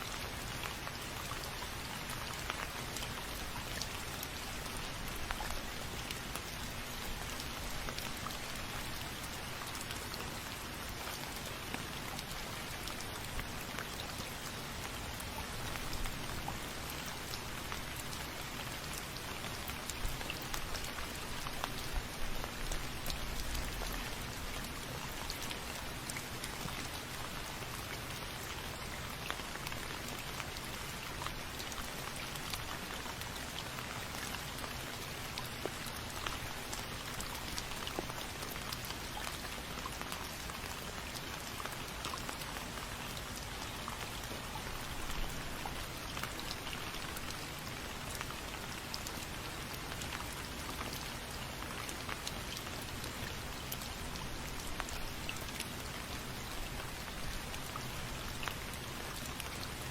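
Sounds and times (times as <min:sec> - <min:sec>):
rain drops ticking on hard surface: 0:00.0 - 0:59.9.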